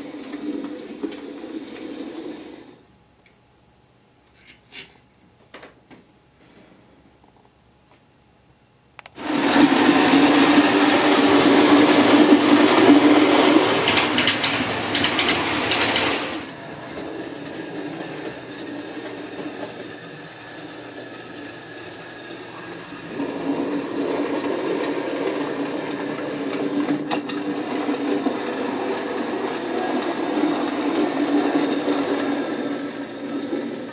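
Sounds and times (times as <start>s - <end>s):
wheels clicking over rails: 0.0s - 2.7s, 9.2s - 33.9s
model train motor whirring: 10.0s - 16.5s.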